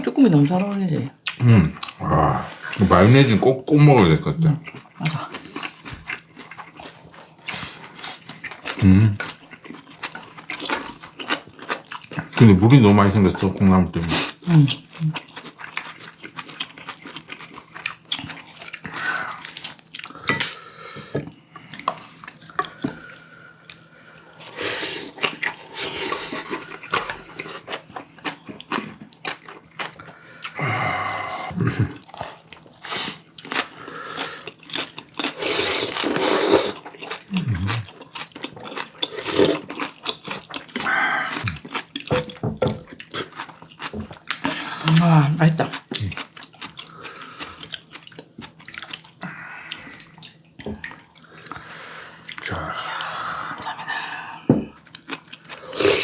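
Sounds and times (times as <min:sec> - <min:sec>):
chewing and crunching: 0:00.0 - 0:03.4, 0:04.0 - 0:56.0.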